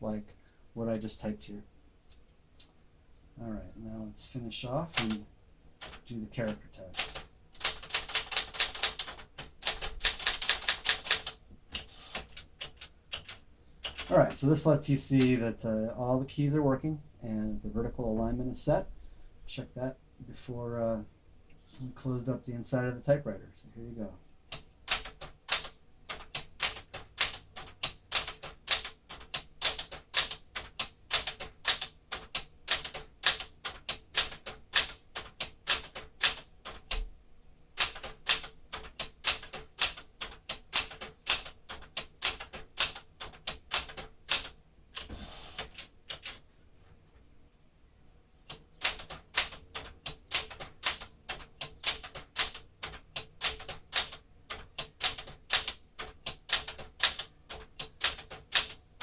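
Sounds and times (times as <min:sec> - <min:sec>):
typewriter carriage return rattle: 0:04.9 - 0:05.2, 0:05.8 - 0:14.5, 0:24.9 - 0:37.0, 0:37.8 - 0:46.4, 0:48.5 - 0:59.0
typewriter keystrokes: 0:04.9 - 0:05.2, 0:05.8 - 0:14.5, 0:24.5 - 0:37.1, 0:37.8 - 0:46.4, 0:48.5 - 0:59.0.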